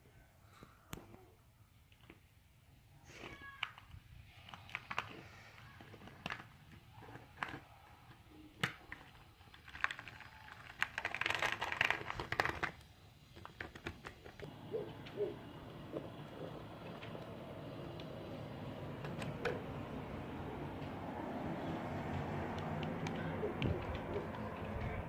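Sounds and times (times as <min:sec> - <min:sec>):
plastic parts rattling: 0:03.2 - 0:14.5.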